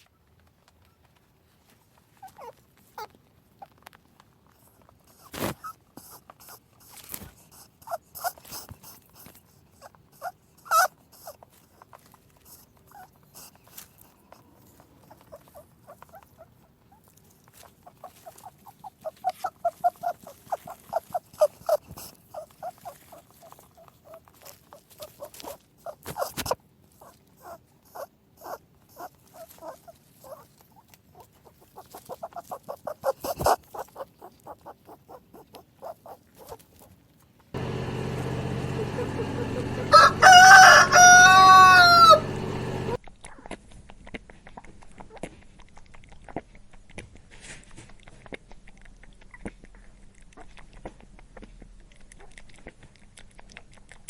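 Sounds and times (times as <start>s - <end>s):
rabbit chewing crunchily: 0.2s - 54.0s.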